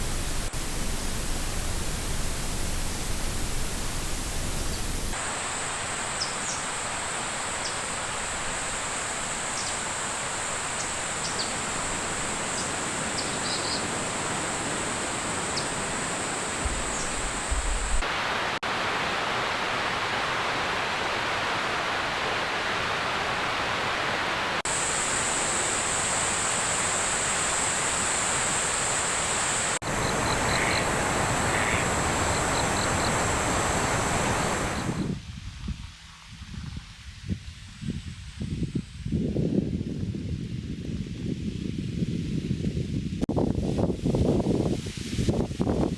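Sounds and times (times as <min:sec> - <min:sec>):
insects trilling: 0:00.0 - 0:18.0, 0:24.7 - 0:35.2
rain or rushing water hiss: 0:00.0 - 0:35.4, 0:41.4 - 0:45.9.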